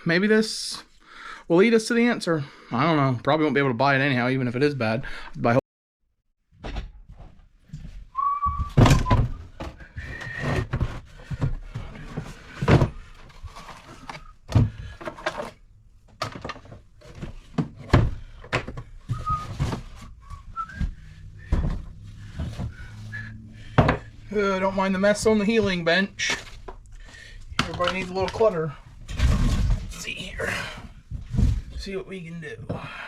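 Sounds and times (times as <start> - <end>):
person whistling: 8.1 - 9.3, 19.1 - 21.8, 22.7 - 23.5
knocks and thuds: 8.4 - 13.1, 16.2 - 23.0, 23.6 - 24.3.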